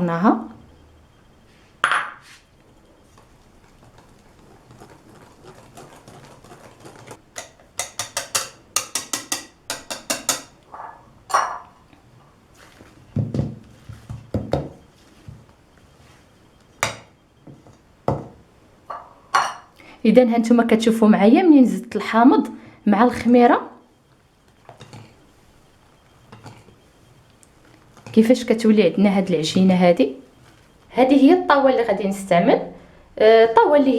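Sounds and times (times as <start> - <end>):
knocks on bowl: 1.8 - 2.2
utensil clicking against bowl: 7.4 - 10.6.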